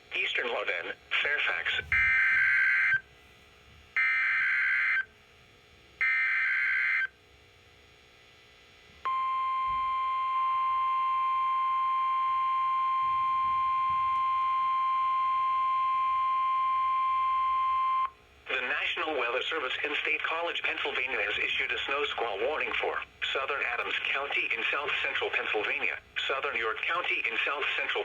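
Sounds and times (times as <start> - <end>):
steady single-pitch alert tone: 1.8 - 3.0.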